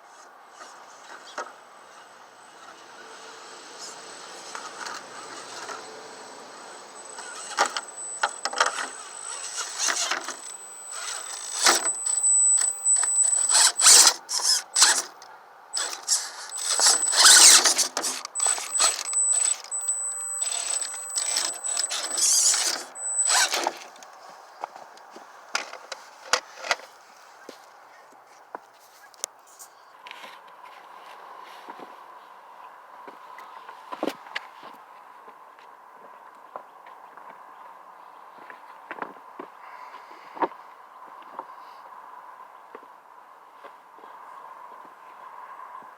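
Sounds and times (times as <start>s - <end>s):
electric motor whining: 2.7s - 15.1s, 15.8s - 24.0s.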